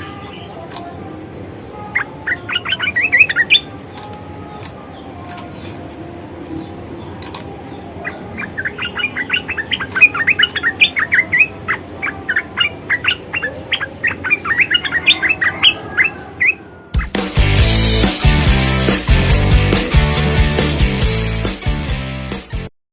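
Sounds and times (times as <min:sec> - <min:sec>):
bird chattering: 0:01.8 - 0:17.4.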